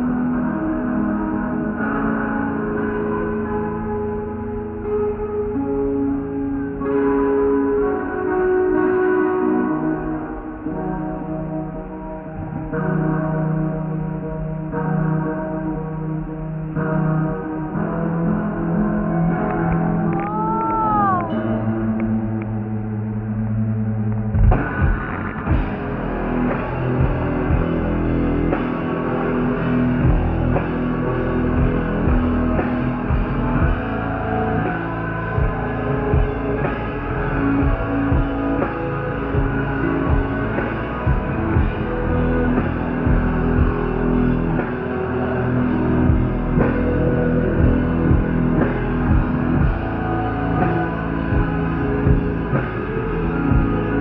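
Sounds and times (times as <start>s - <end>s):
distorted electric guitars: 0.0s - 54.0s
rock band playing: 16.9s - 21.9s, 24.3s - 54.0s
drum kit: 24.3s - 54.0s.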